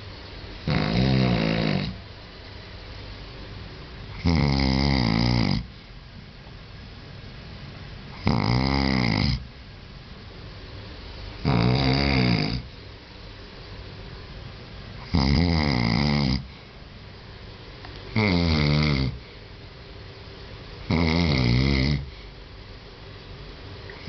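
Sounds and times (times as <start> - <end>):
steady low hiss: 0.0 - 24.0
loud rasping snores: 0.6 - 2.0, 4.2 - 5.7, 8.2 - 9.4, 11.4 - 12.7, 15.0 - 16.5, 18.1 - 19.2, 20.9 - 22.1.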